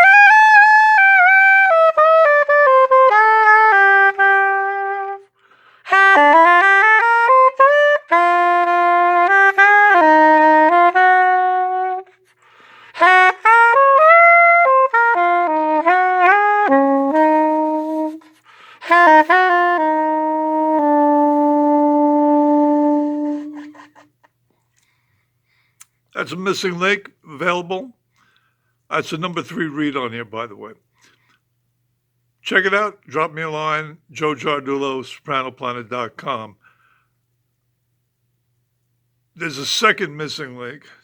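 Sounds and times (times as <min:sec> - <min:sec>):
soprano saxophone solo: 0:00.0 - 0:24.1.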